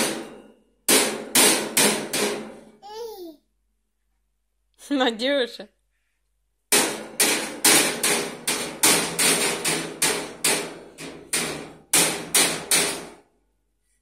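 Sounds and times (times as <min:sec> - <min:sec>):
knocks on metal heater: 0:00.0 - 0:02.7, 0:06.7 - 0:13.2.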